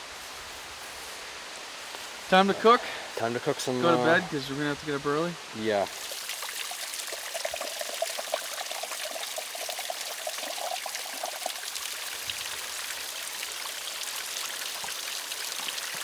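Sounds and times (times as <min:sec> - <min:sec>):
steady hiss: 0:00.0 - 0:06.5
water pouring into a pouch: 0:05.9 - 0:13.0.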